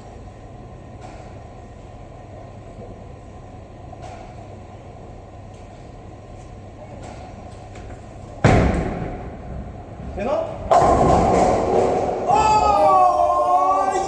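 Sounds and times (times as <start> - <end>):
bowling balls rolling: 8.9 - 14.0.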